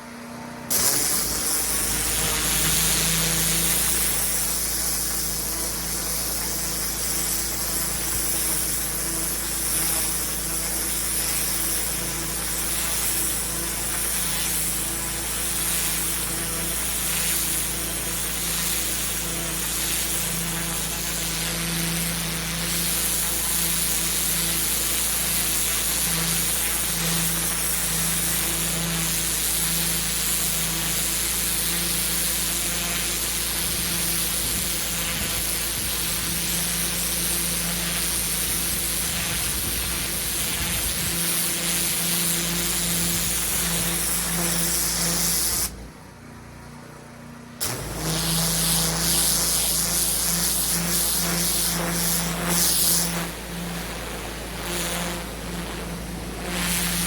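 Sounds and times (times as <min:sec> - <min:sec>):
pressure washer motor hum: 0:00.0 - 0:57.0
water jet spraying on paving: 0:00.7 - 0:45.8, 0:47.6 - 0:57.0.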